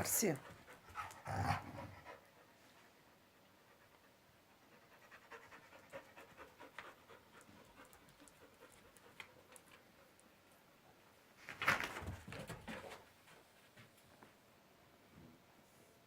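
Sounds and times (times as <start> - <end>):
dog panting: 0.3 - 10.3.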